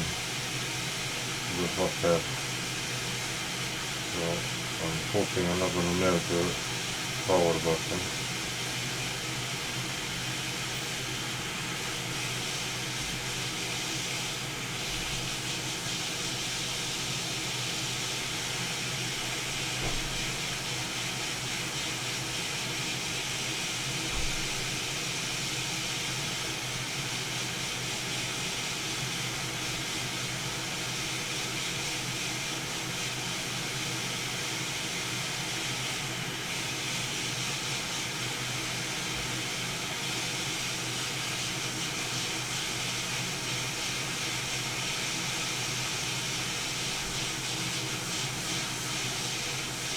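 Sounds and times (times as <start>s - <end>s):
hot air gun hissing: 0.0s - 20.6s.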